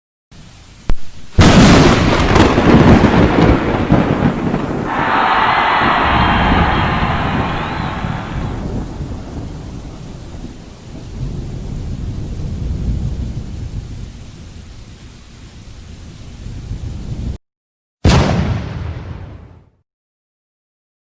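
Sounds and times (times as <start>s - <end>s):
faint rain hiss: 0.4s - 17.3s
rolling thunder: 1.4s - 14.2s.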